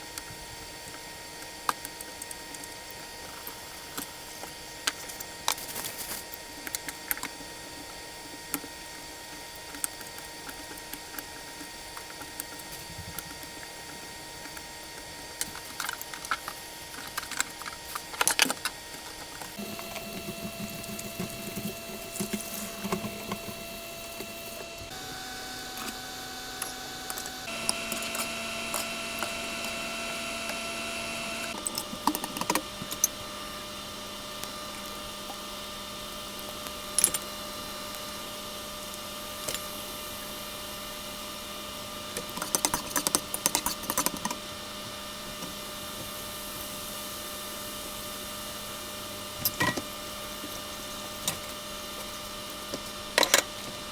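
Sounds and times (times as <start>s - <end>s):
appliance hum: 0.0s - 53.9s
utensils and dishes clattering: 49.4s - 51.5s, 52.7s - 53.9s.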